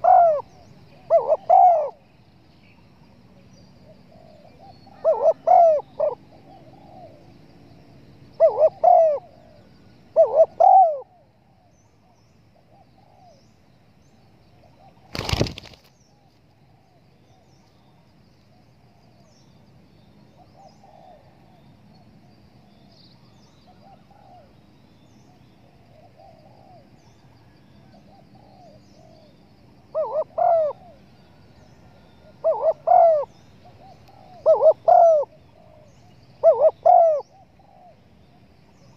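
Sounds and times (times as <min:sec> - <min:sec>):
dove cooing: 0:00.0 - 0:02.0, 0:03.8 - 0:07.3, 0:08.3 - 0:11.2, 0:12.7 - 0:13.4, 0:20.4 - 0:21.6, 0:23.7 - 0:24.6, 0:25.7 - 0:27.2, 0:27.8 - 0:31.1, 0:31.9 - 0:38.0.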